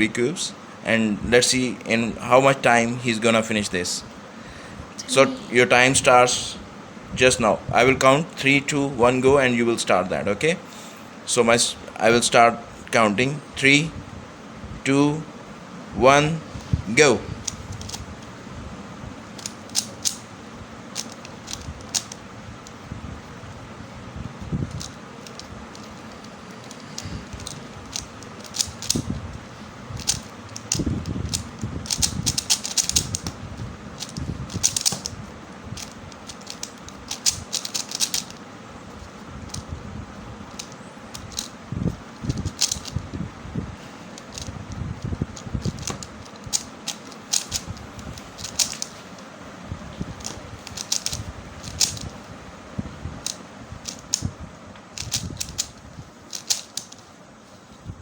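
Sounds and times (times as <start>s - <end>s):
puzzle cube plastic clicking: 17.4s - 18.4s, 19.3s - 20.3s, 20.9s - 22.9s, 24.6s - 29.2s, 29.9s - 39.8s, 40.5s - 41.6s, 42.2s - 43.0s, 44.1s - 49.3s, 50.2s - 52.2s, 53.2s - 54.3s, 55.0s - 57.1s.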